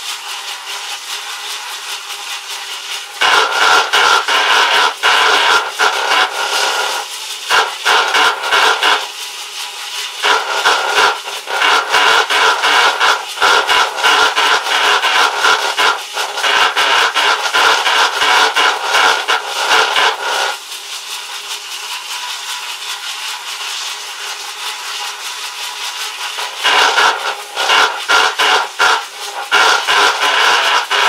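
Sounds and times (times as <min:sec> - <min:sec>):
bike rollers harsh whirring noise: 0:02.6 - 0:09.2, 0:10.2 - 0:20.6, 0:26.2 - 0:31.0.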